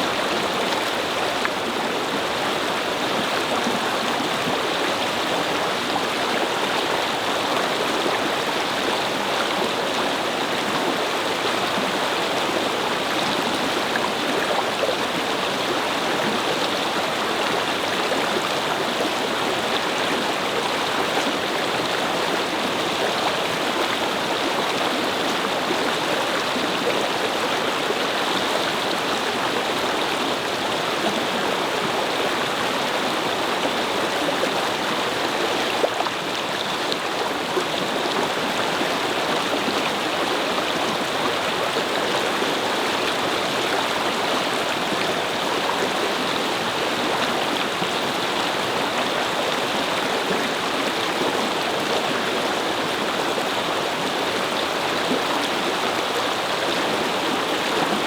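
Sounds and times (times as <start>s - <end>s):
brook babbling over stones: 0.0s - 58.0s.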